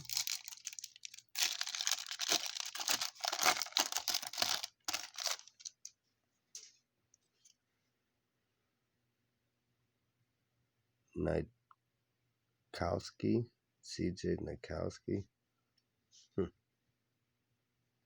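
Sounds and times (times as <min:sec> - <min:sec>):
card pack wrapper tearing and crinkling: 0:00.0 - 0:05.9.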